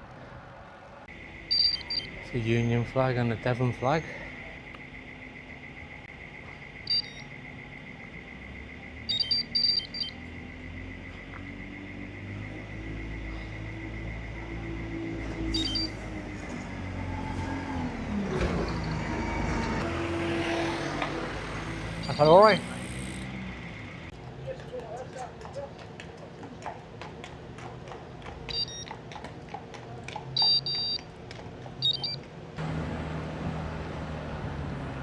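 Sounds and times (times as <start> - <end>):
vehicle engine rumble: 0.0 - 35.0
vehicle passing: 0.0 - 35.0
short electronic beeps: 1.5 - 2.9, 6.8 - 7.4, 9.1 - 10.4, 15.6 - 16.0, 28.5 - 28.9, 30.4 - 31.0, 31.8 - 32.2.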